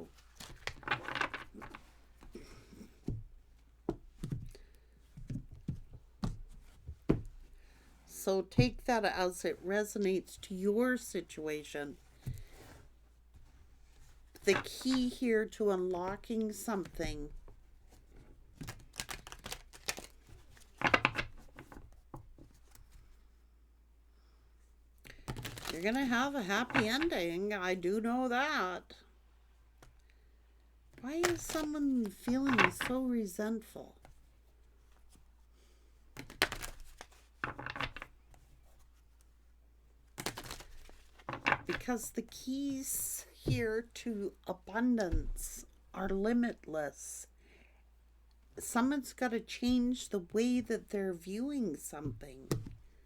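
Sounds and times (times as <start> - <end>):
cards rustling: 0.2 - 2.8, 18.6 - 21.8, 25.1 - 27.2, 31.2 - 33.0, 36.2 - 38.1, 40.1 - 41.8.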